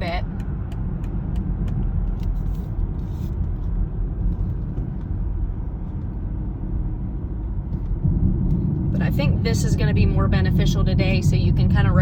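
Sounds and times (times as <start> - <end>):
car interior road rumble: 0.0 - 12.0.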